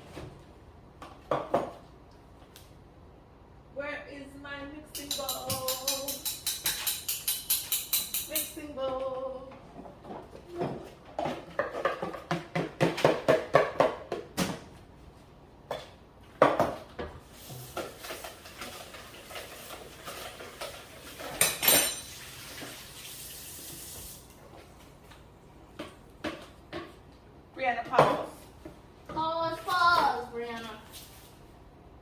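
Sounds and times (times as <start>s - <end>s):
dishes clattering: 17.7s - 22.2s.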